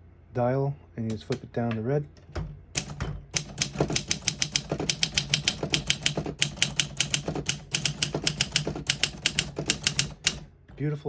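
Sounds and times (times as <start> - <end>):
manual typewriter typing: 2.7 - 10.5.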